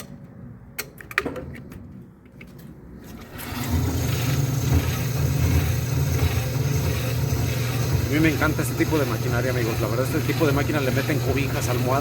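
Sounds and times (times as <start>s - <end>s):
washer motor humming: 3.2s - 12.0s.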